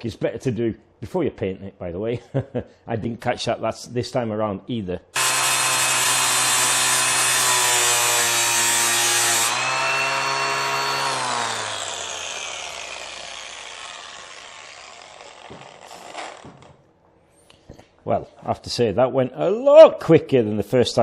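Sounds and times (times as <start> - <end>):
grinder winding down whine: 5.2 - 16.7
angle grinder grinding metal: 5.2 - 16.8.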